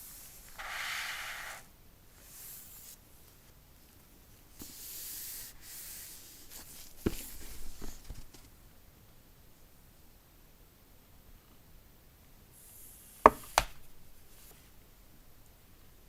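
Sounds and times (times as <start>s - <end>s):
hands rubbing and sliding on packaging: 0.0s - 3.0s, 4.6s - 8.5s.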